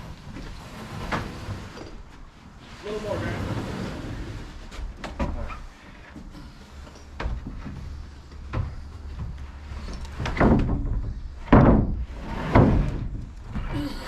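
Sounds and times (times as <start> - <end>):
wood knocking on roof frame: 10.2 - 13.0.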